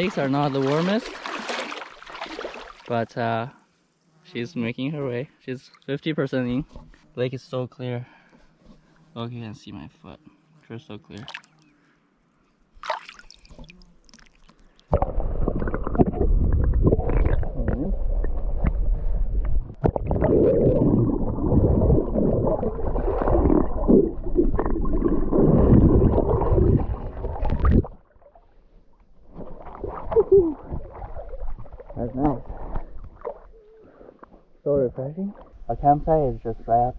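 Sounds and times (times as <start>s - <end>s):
underwater gurgling and rumbling: 14.9s - 33.7s.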